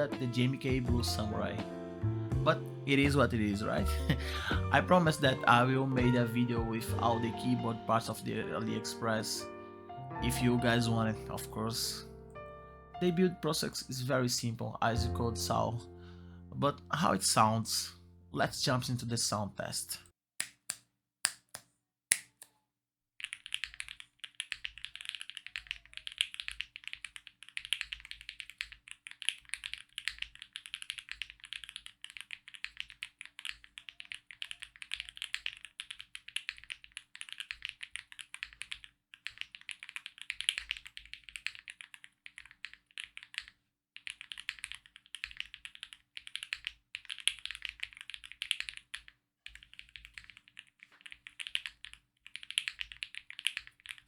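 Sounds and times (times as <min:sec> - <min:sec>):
mechanical keyboard typing: 0:23.2 - 0:54.0.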